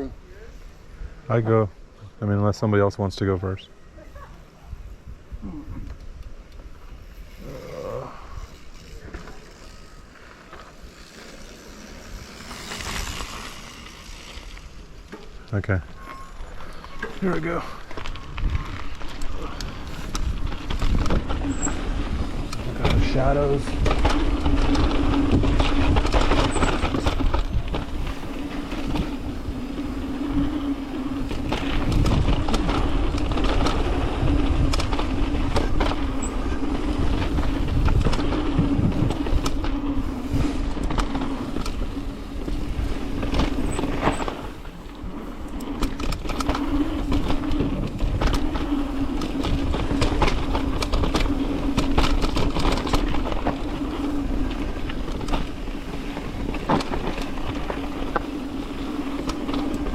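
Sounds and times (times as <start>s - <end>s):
bike tyres rolling on dirt: 0.0s - 59.9s
bike frame rattling: 6.6s - 59.9s
wind on microphone: 18.1s - 59.9s.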